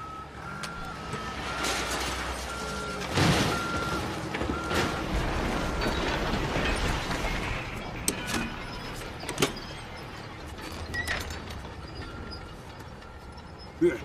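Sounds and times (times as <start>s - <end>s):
reversing beeper: 0.0s - 11.2s
heavy machinery rumbling: 0.0s - 14.0s.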